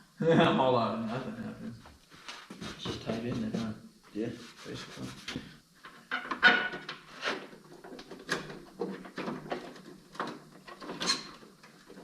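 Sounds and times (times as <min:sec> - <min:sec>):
hard plastic scraping and squeaking: 0:06.1 - 0:12.0.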